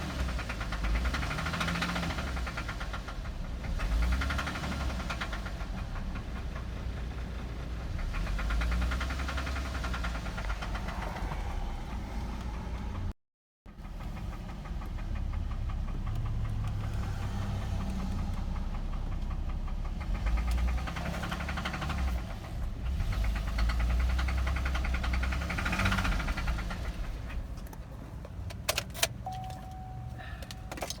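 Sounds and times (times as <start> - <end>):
car engine knocking: 0.0 - 13.1, 13.7 - 31.0
short steady tone: 29.3 - 30.8.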